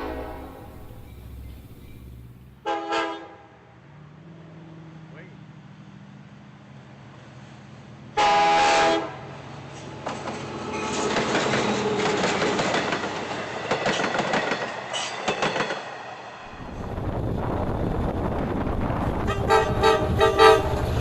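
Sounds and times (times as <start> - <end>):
locomotive air horn blast: 0.0 - 1.1, 2.6 - 3.6, 8.2 - 9.3, 19.2 - 21.0
wheels clattering over rail joints: 0.0 - 2.6, 9.7 - 15.9
train rolling by: 0.0 - 2.8, 3.8 - 21.0.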